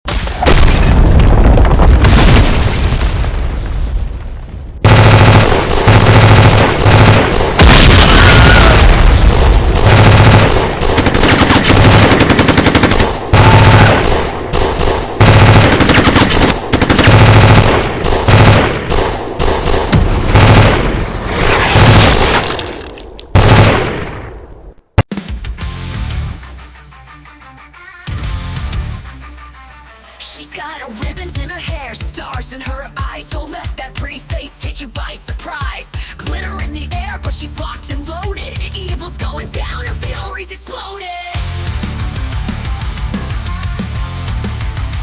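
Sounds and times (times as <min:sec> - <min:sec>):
machine-gun fire: 0:00.1 - 0:22.7, 0:23.3 - 0:24.3
low regular thumping beat: 0:31.0 - 0:40.3.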